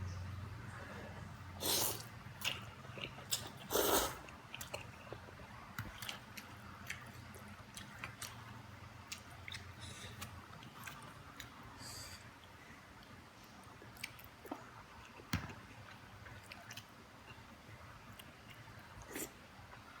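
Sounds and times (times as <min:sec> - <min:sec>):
person chewing and smacking: 0:01.9 - 0:11.6, 0:13.7 - 0:17.4.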